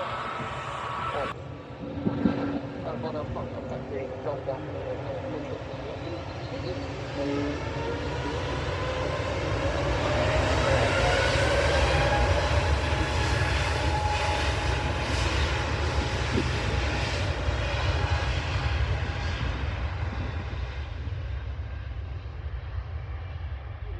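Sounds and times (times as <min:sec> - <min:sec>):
jet engines roaring: 0:00.0 - 0:23.9.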